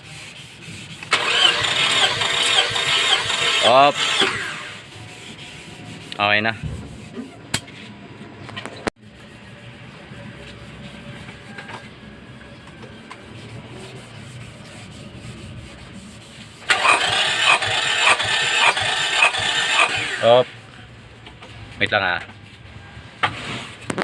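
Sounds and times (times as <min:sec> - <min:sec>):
engine cranking on starter: 0:01.1 - 0:04.8, 0:16.7 - 0:20.4.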